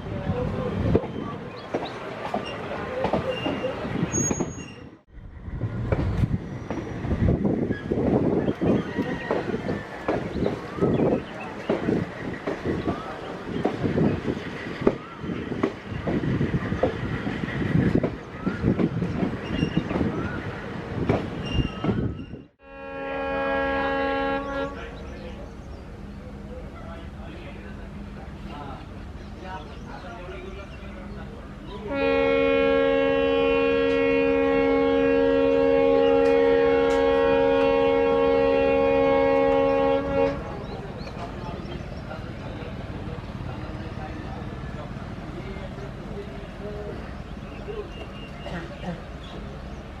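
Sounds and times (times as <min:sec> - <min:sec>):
wheel squeals: 0:02.3 - 0:05.0, 0:19.4 - 0:20.4, 0:21.4 - 0:22.5
locomotive air horn chord: 0:22.6 - 0:24.9, 0:31.9 - 0:40.5.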